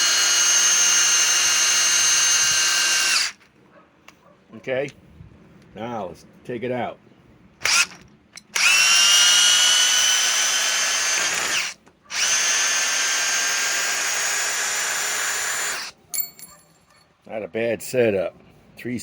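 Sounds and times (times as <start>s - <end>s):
hammer drill motor whine: 0.0s - 3.4s, 7.7s - 8.0s, 8.6s - 15.9s.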